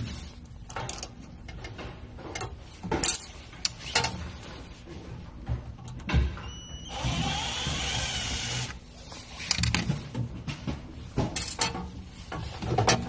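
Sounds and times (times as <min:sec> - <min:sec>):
electric screwdriver whining: 0:06.8 - 0:08.8.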